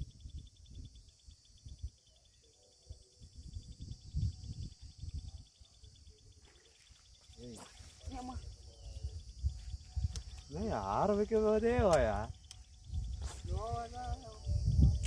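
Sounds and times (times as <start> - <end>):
insects chirring: 0.0 - 15.0
low rumbling on microphone: 11.2 - 15.0.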